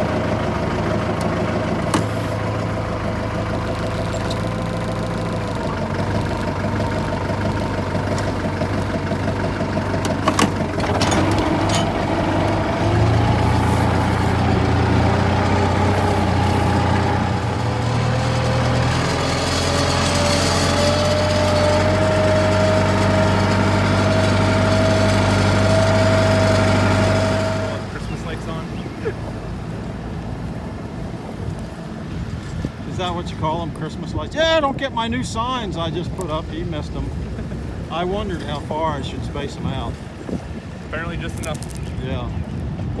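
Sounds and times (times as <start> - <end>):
vehicle engine running: 0.0 - 43.0.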